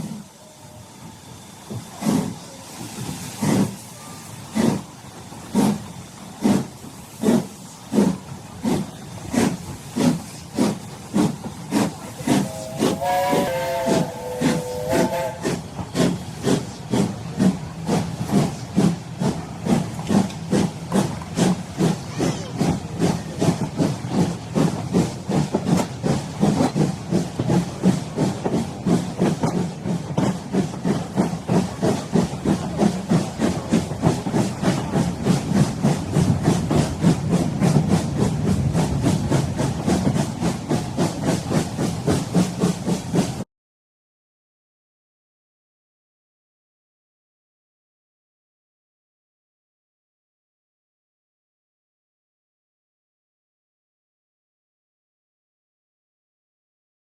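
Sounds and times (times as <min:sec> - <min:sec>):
steam locomotive chuffing: 0:00.0 - 0:43.4.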